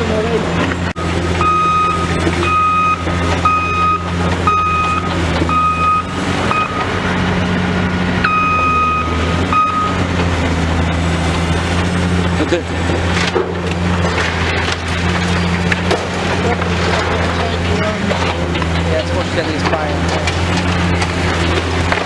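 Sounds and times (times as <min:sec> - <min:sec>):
diesel engine running: 0:00.0 - 0:22.0
reversing alarm beeping: 0:00.9 - 0:13.1.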